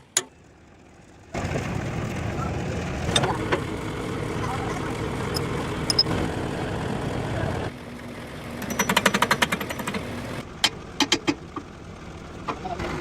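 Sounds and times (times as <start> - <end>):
rattle of metallic impacts: 8.6 - 11.7.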